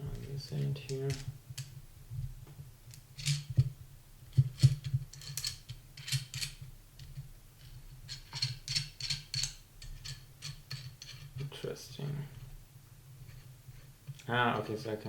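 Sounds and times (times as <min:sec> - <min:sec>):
metal clamp clicks and rattles: 0:02.9 - 0:03.7, 0:04.3 - 0:11.5.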